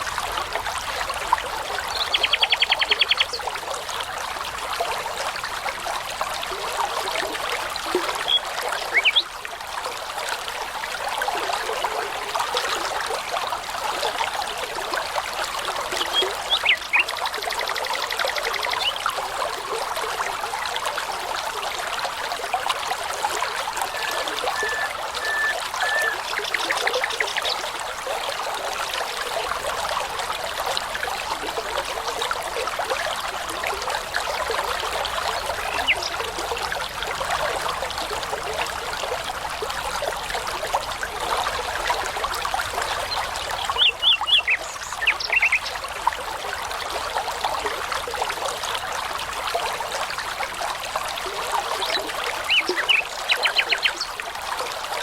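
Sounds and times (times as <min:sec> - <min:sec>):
brook trickling: 0:00.0 - 0:55.0
songbirds calling: 0:01.8 - 0:03.5, 0:08.1 - 0:09.3, 0:16.0 - 0:19.0, 0:23.6 - 0:27.8, 0:35.4 - 0:36.2, 0:43.1 - 0:45.8, 0:51.8 - 0:54.1.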